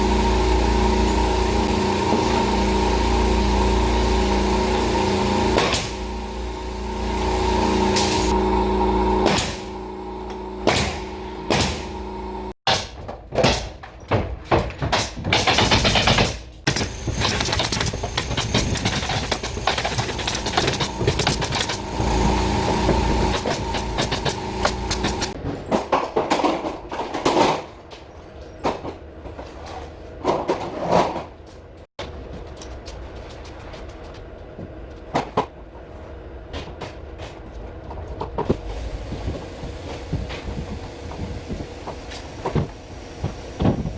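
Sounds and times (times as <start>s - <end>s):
air compressor motor humming: 0.0s - 12.6s, 16.7s - 25.4s, 38.6s - 43.9s
nail gun firing: 10.6s - 11.8s, 12.7s - 13.8s, 14.8s - 21.8s
carpentry clatter and knocks: 12.7s - 22.1s.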